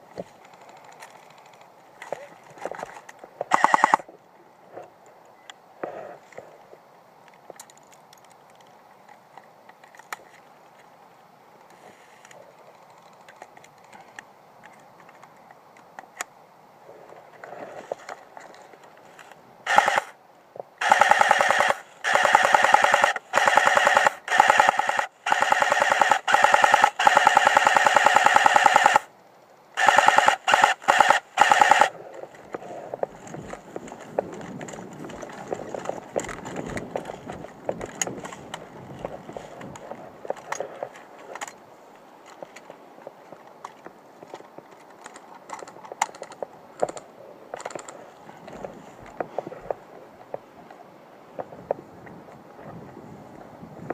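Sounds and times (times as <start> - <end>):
airsoft gun firing bursts: 3.5 - 4.0, 19.7 - 20.2, 20.8 - 29.1, 29.8 - 32.0.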